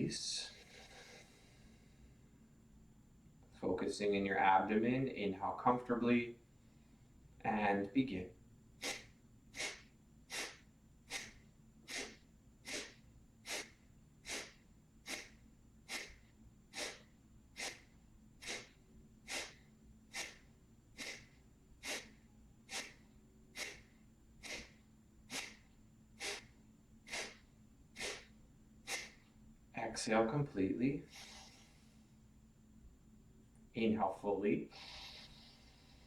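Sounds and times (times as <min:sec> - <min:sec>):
forceful nasal exhalations: 0:00.0 - 0:01.9, 0:08.8 - 0:29.3, 0:31.0 - 0:32.0, 0:34.7 - 0:36.0.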